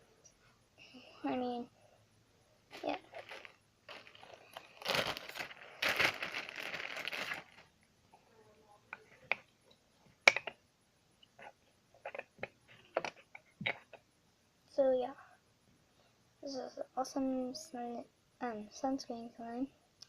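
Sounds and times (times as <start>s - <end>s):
rustling and crinkling: 2.7s - 7.8s, 11.4s - 14.0s.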